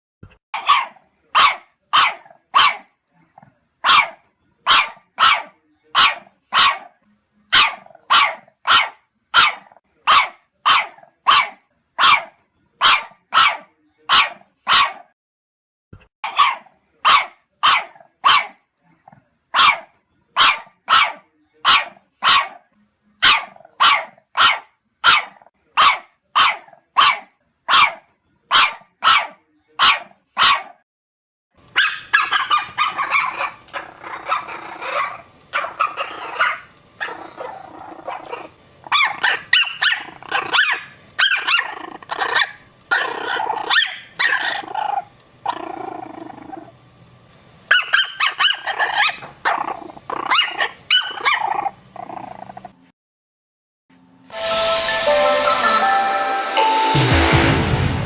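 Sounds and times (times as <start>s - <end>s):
puppy barking and yipping: 0.6s - 2.9s, 3.8s - 6.9s, 7.5s - 15.1s, 16.2s - 18.6s, 19.6s - 22.6s, 23.2s - 30.8s, 31.8s - 33.6s, 34.2s - 37.5s, 38.1s - 43.0s, 43.7s - 44.7s, 47.7s - 49.3s, 50.3s - 51.5s.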